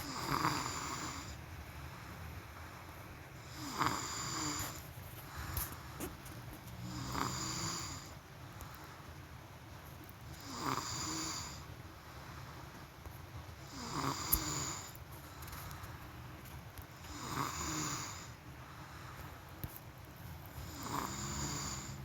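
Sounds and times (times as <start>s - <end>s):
person snoring: 0.0s - 1.4s, 3.4s - 5.4s, 6.8s - 8.2s, 10.4s - 11.6s, 13.7s - 14.9s, 17.1s - 18.4s, 20.6s - 22.0s.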